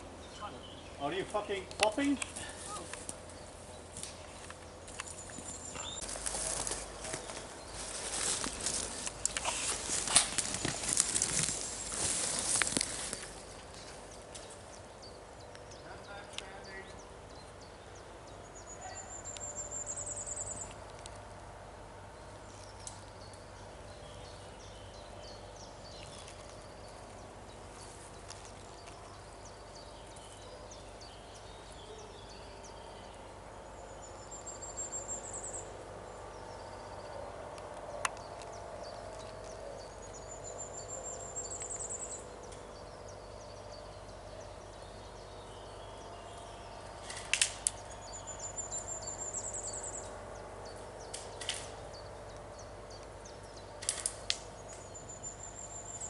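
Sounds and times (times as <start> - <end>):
faint outdoor background noise: 0.0 - 56.0
small clicks: 53.8 - 54.8.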